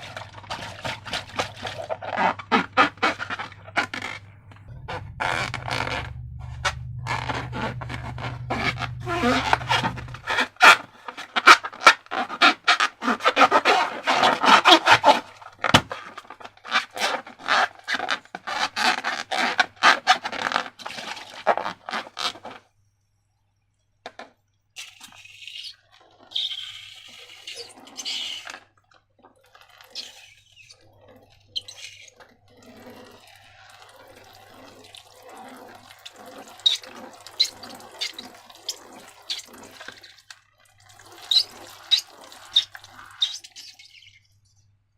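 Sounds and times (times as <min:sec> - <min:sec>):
slime wet squelches: 0:24.8 - 0:44.6.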